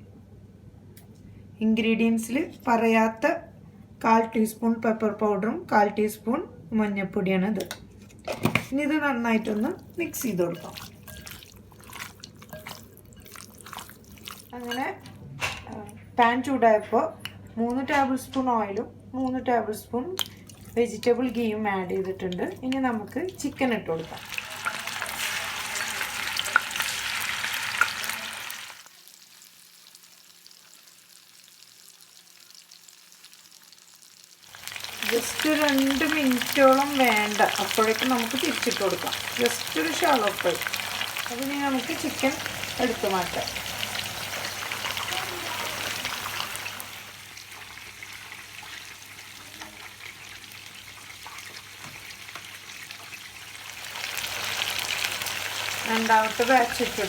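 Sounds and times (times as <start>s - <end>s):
chicken sizzling in hot oil: 24.0s - 57.0s.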